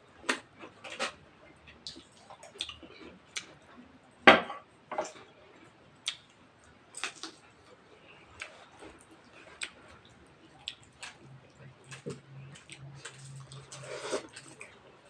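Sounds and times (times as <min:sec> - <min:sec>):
chewing: 0:01.8 - 0:03.8, 0:07.0 - 0:14.9.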